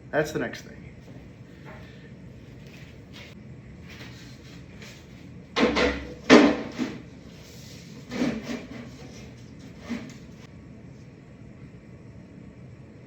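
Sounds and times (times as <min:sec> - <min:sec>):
wooden boards knocking and scraping: 0:05.6 - 0:07.0.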